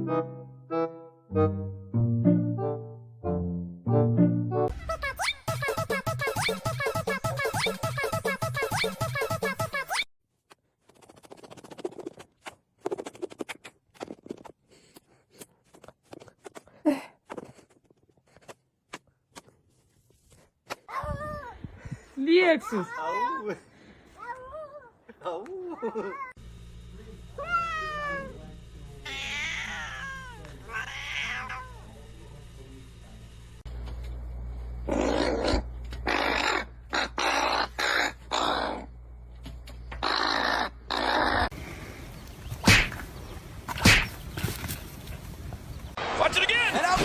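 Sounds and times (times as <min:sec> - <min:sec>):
upbeat background music: 0:00.0 - 0:09.8
steady low hum: 0:26.3 - 0:30.7, 0:31.5 - 0:40.0
cat meowing: 0:27.4 - 0:28.3, 0:29.0 - 0:31.8.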